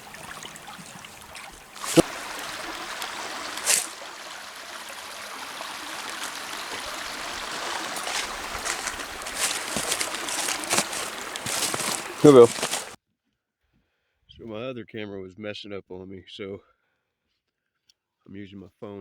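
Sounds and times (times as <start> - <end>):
splash-like hiss: 0.0 - 13.0
stream water trickling: 0.0 - 13.0.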